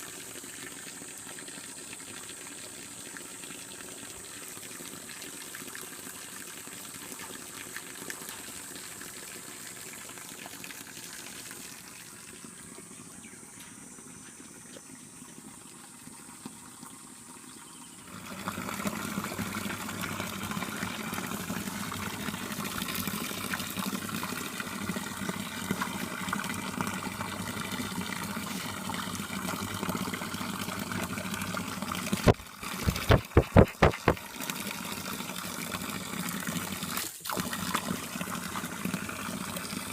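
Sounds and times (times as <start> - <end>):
waterfall splashing into pool: 18.1 - 39.9.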